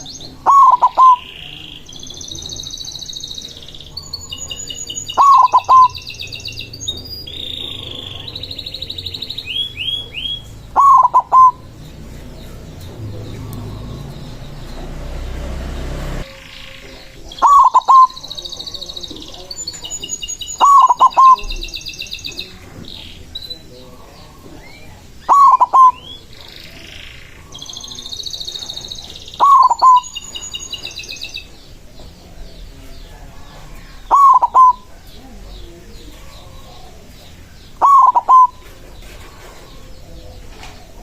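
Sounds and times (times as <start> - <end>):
dove cooing: 0.0 - 2.4, 3.9 - 6.0, 7.4 - 15.3, 16.2 - 20.0, 20.6 - 21.6, 23.7 - 30.9, 33.5 - 41.0
small birds trilled chirping: 0.0 - 41.0.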